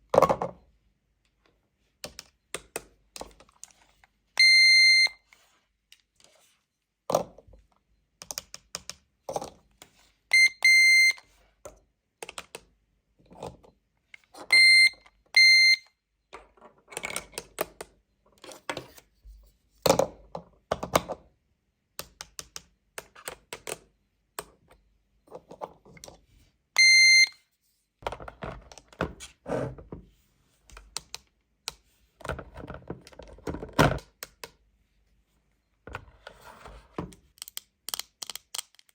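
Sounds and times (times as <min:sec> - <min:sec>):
toy cash register beeping: 0:04.4 - 0:05.3, 0:10.3 - 0:11.4, 0:14.3 - 0:15.9, 0:26.8 - 0:27.4.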